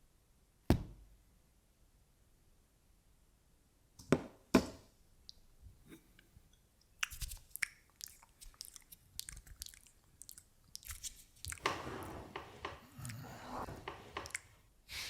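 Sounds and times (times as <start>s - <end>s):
chewing crunches and clicks: 6.8s - 11.7s.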